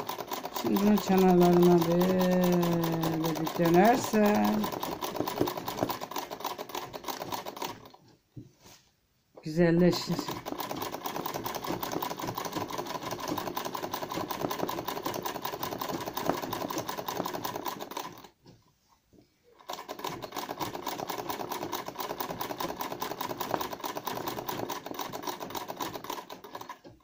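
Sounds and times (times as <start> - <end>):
sewing machine stitching fast: 0.0 - 8.0, 9.8 - 18.3, 19.6 - 27.0.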